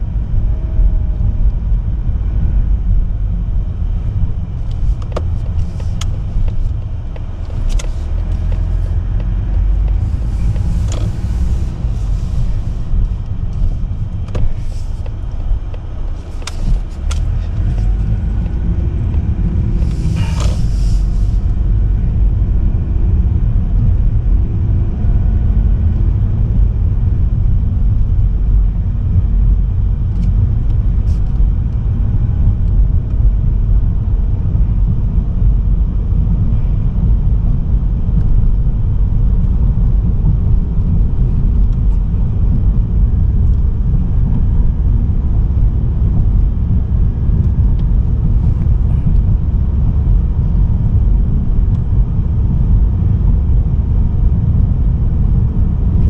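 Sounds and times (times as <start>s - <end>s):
car engine and road noise: 0.0s - 56.0s.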